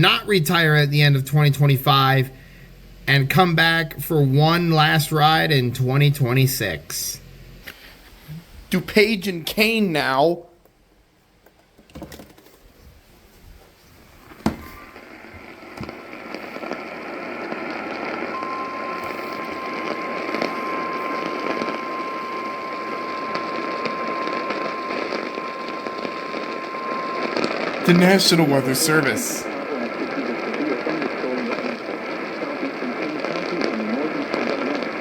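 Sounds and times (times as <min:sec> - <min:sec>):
radio static hiss: 0:00.0 - 0:10.1, 0:14.2 - 0:35.0
steady alert tone: 0:18.4 - 0:29.5.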